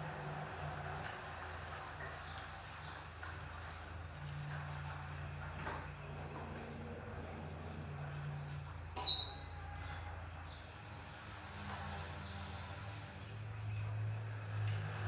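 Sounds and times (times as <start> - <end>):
birds chirping: 9.0 - 9.5.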